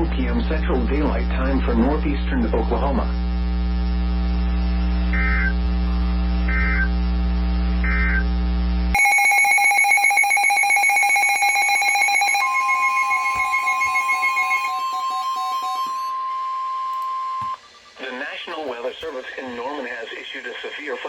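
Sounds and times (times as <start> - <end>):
pulsing multi-tone electronic alert: 9.0 - 17.6.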